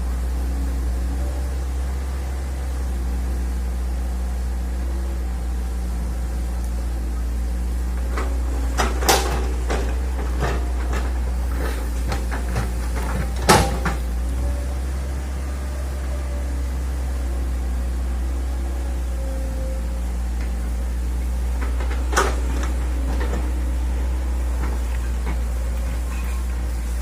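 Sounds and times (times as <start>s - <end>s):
excavator diesel engine running: 0.0s - 27.0s
sharp knocks and clanks: 8.1s - 14.1s.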